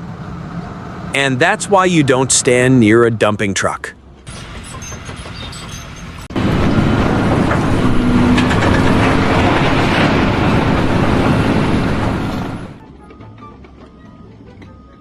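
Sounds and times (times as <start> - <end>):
heavy machine rumbling: 3.7 - 12.8.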